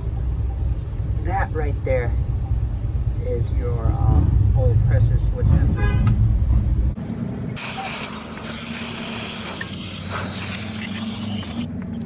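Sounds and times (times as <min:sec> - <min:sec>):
pressurized spray hissing: 0:07.6 - 0:11.7.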